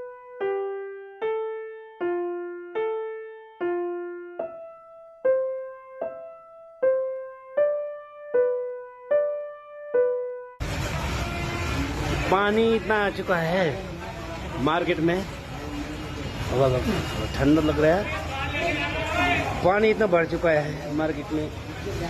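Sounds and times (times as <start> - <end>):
slow piano melody: 0.0 - 10.8.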